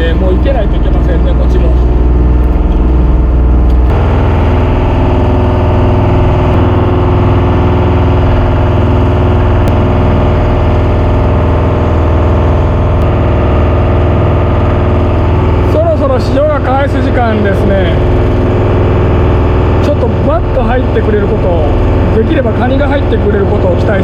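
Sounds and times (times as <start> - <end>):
engine running: 0.0 - 24.0.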